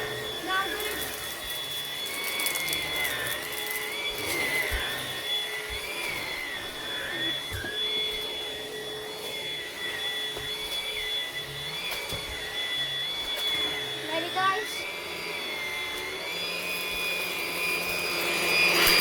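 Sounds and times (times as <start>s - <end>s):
vacuum cleaner motor whine: 0.0s - 19.0s.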